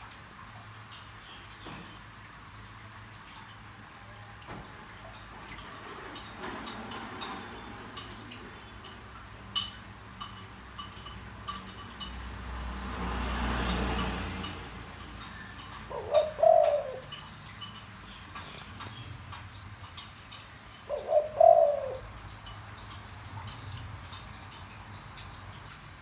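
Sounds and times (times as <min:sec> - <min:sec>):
small birds chirping: 0:15.0 - 0:26.0
dove cooing: 0:15.2 - 0:17.7, 0:20.8 - 0:22.9.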